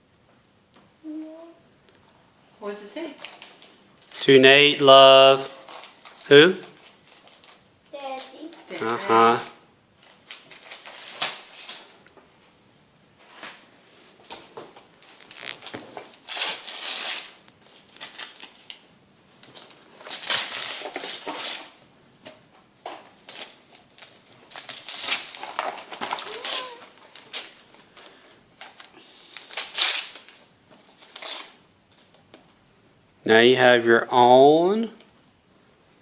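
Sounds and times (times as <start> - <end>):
wrapping paper tearing and crumpling: 3.2 - 4.3, 5.4 - 9.4, 10.0 - 11.9, 15.0 - 18.8, 19.4 - 21.8, 23.2 - 32.1.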